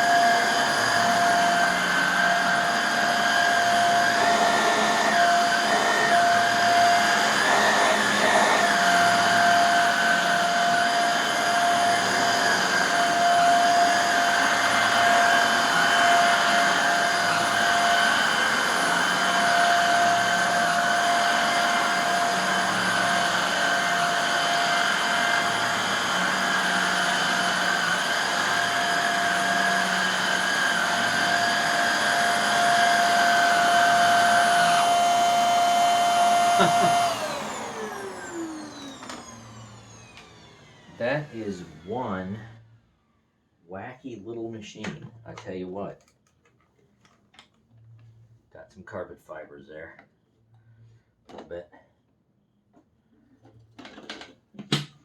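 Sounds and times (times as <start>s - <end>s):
vacuum cleaner motor whine: 0.0s - 43.0s.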